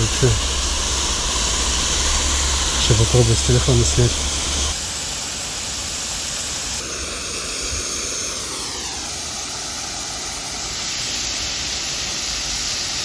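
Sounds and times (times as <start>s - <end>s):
passing engine: 0.0s - 4.7s
steady rushing hiss: 0.0s - 13.0s.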